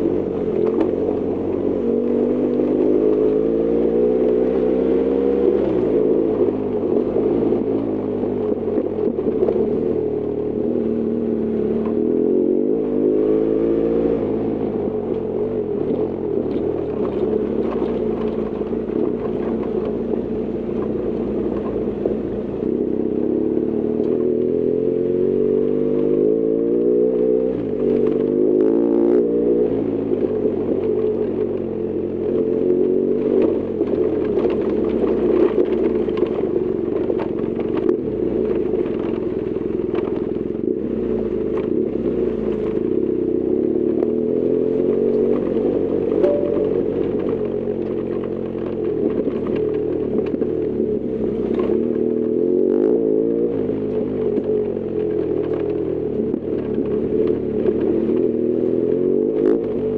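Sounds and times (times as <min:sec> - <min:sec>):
motorcycle engine running: 0:00.0 - 0:59.9
rattles and clicks: 0:15.8 - 0:22.9, 0:30.2 - 0:43.1, 0:44.8 - 0:52.4, 0:53.3 - 0:58.7.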